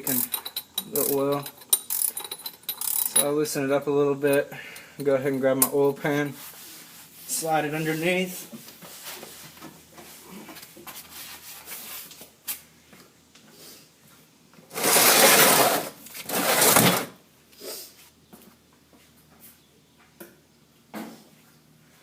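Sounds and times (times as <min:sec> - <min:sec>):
small knocks and rustles: 0:08.4 - 0:13.5
drain pan scraping ground: 0:14.7 - 0:17.1.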